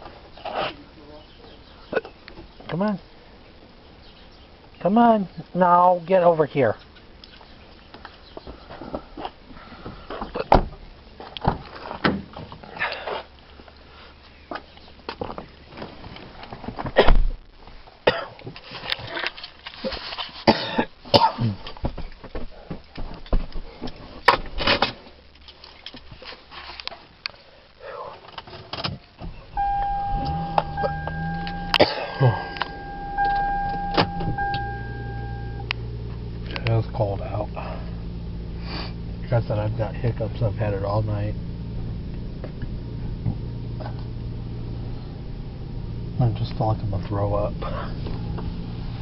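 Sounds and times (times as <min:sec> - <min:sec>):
low steady hum: 0:29.0 - 0:49.0
car warning chime: 0:29.6 - 0:35.8.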